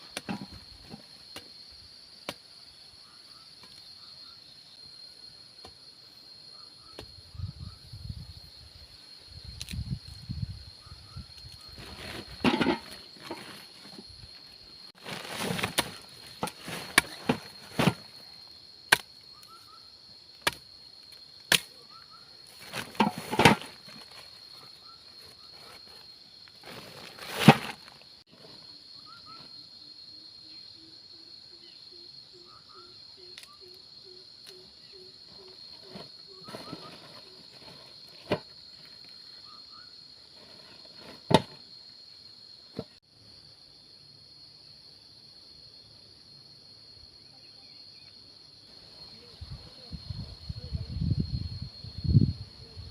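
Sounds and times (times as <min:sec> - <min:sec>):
insects buzzing: 0:00.0 - 0:52.9
sharp knocks and thuds: 0:41.0 - 0:41.6.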